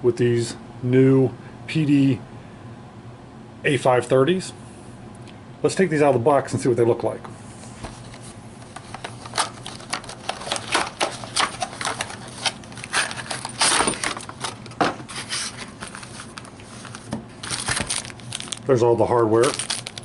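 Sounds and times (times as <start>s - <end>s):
packaging rustling: 7.8s - 20.0s.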